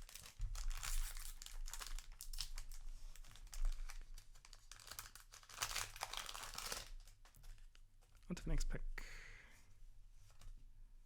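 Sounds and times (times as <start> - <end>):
wrapper crinkling: 0.0 - 8.2.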